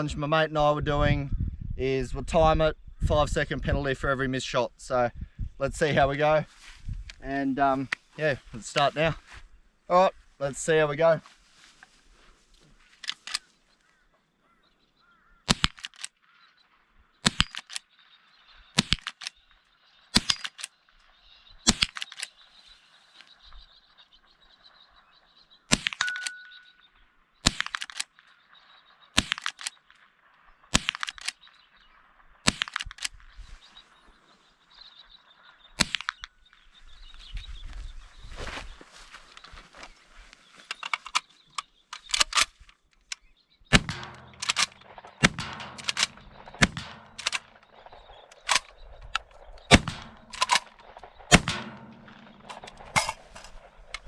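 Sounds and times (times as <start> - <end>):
rifle shots: 25.7 - 26.7, 29.2 - 29.8, 30.7 - 31.4, 43.7 - 54.0.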